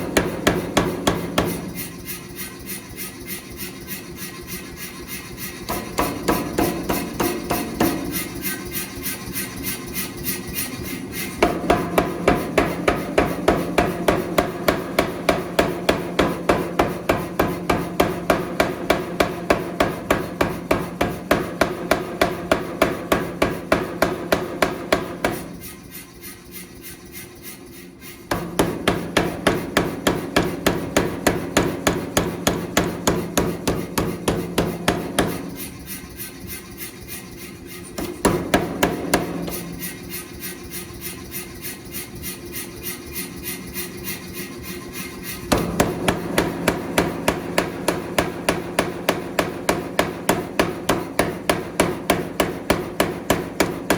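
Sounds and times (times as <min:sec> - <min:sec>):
power hammer pounding steel: 0:00.0 - 0:25.9, 0:28.3 - 0:41.4, 0:44.6 - 0:53.9.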